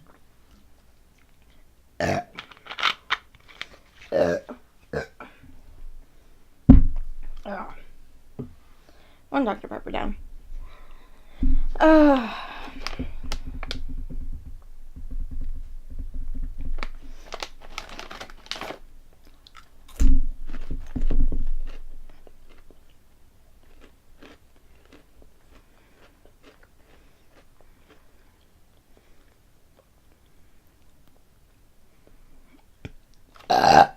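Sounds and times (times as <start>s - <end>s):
chewing and crunching snacks: 17.2s - 33.5s.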